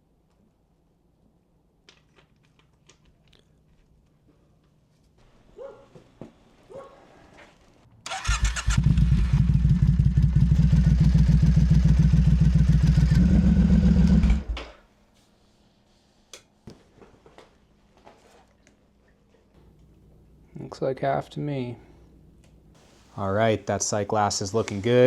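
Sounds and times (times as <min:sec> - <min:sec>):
motorcycle engine starter cranking: 0:08.1 - 0:09.8
motorcycle engine idling: 0:08.1 - 0:14.5.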